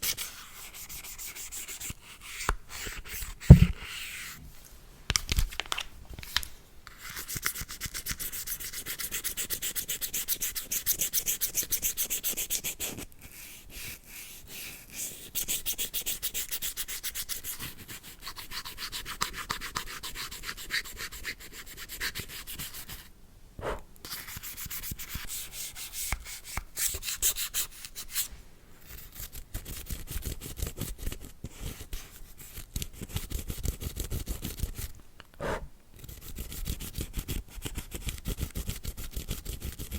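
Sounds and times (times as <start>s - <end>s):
bristle brush scrubbing hard surface: 3.5s - 3.7s.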